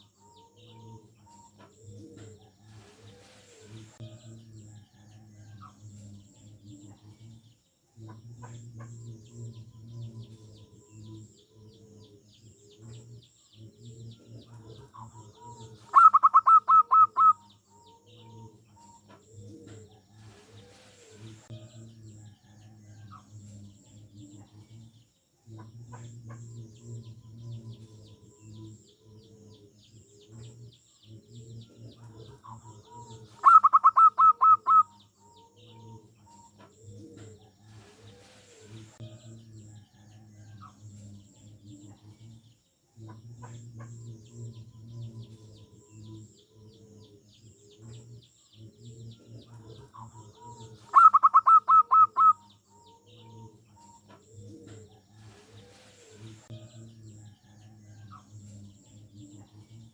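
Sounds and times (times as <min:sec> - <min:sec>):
doves cooing: 0:00.0 - 0:04.0, 0:08.1 - 0:21.5, 0:25.6 - 0:39.0, 0:43.1 - 0:56.5.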